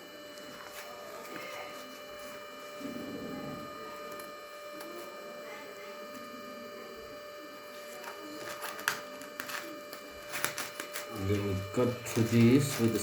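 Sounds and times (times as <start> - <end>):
steady electrical hum: 0.0 - 13.0
packaging crackling: 7.8 - 13.0.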